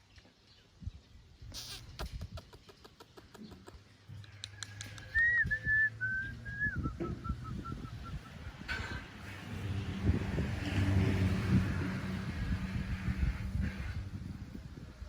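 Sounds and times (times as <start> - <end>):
faint clicks: 4.2 - 5.2.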